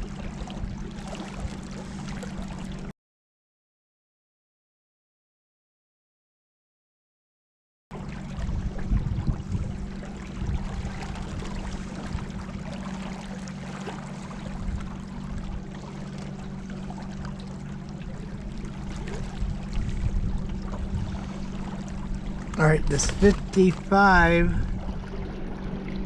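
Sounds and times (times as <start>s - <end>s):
river water splashing: 0.0s - 2.9s, 8.0s - 26.0s
steady low hum: 8.0s - 26.0s.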